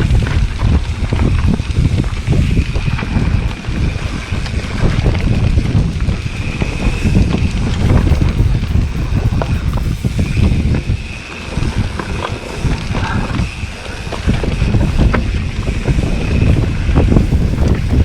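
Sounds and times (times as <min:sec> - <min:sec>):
bike rattling over rough ground: 0:00.0 - 0:18.0
wind rumble on microphone: 0:00.0 - 0:18.0.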